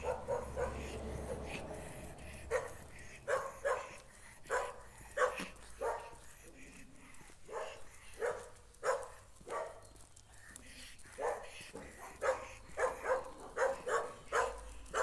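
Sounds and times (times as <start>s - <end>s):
dog barking: 0.0s - 1.5s, 2.4s - 6.2s, 7.5s - 9.8s, 11.2s - 15.0s.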